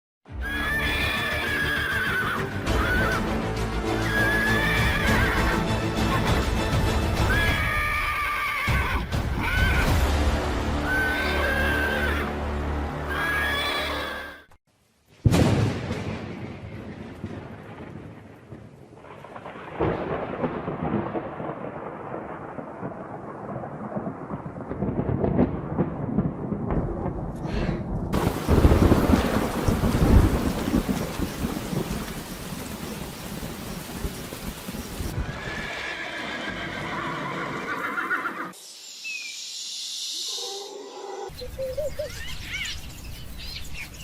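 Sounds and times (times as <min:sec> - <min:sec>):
horse whinnying: 0:00.4 - 0:03.2, 0:04.0 - 0:05.6, 0:10.8 - 0:12.3, 0:13.1 - 0:14.5, 0:35.2 - 0:38.6.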